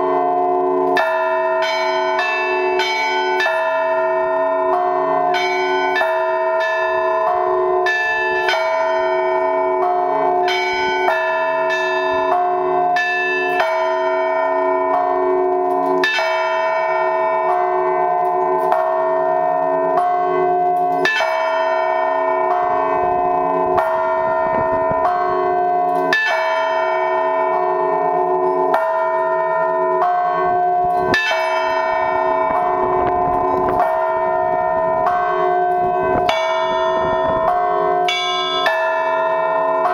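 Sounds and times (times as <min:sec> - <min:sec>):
large bells ringing hum: 0:00.0 - 0:39.9
small church bells struck rapidly: 0:00.0 - 0:39.9
heavy bell stroke: 0:18.0 - 0:39.9.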